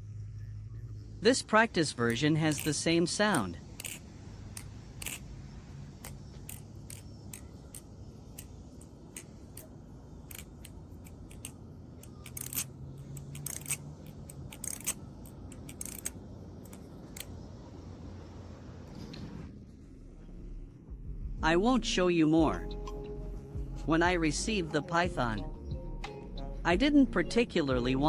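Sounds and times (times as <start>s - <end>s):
butterfly knife clicking and clacking: 2.0s - 17.4s.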